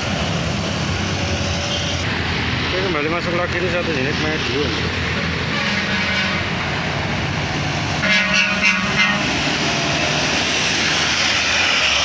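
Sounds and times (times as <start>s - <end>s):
vehicle engine noise: 0.0s - 12.0s
multi-tone bus air horn: 5.4s - 6.6s, 8.0s - 9.6s.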